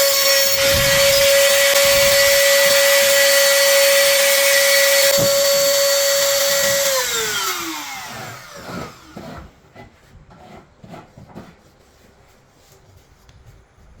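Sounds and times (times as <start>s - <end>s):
electric router motor whining: 0.0s - 9.2s.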